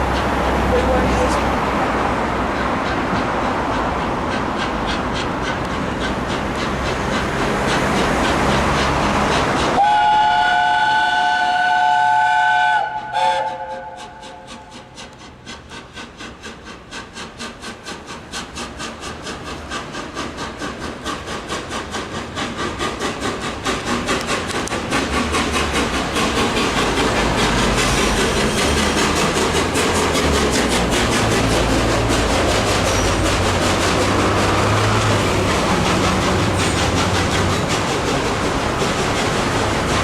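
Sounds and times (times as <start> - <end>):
steam locomotive exhaust beats: 0.0 - 40.0
steam locomotive whistle: 9.8 - 14.9
rushing noise: 21.2 - 40.0.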